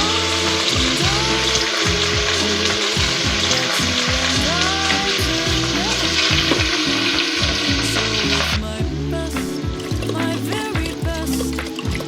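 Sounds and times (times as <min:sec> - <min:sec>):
food sizzling in a pan: 0:00.0 - 0:08.6
soft background music: 0:00.0 - 0:12.0.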